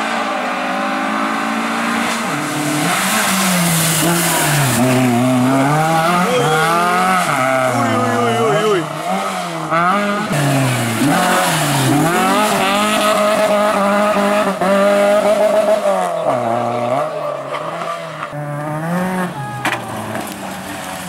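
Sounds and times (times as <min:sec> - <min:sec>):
rally car engine revving: 0:00.0 - 0:21.0.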